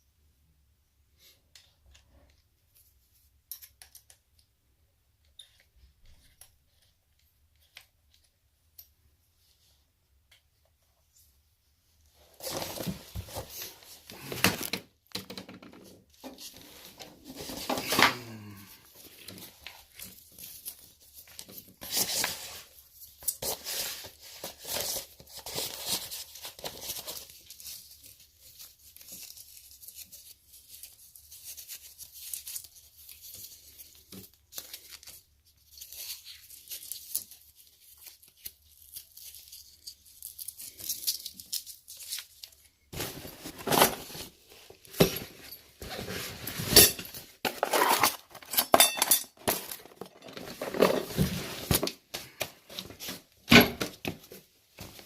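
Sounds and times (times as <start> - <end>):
tearing and scraping at a wall: 45.8 - 48.6.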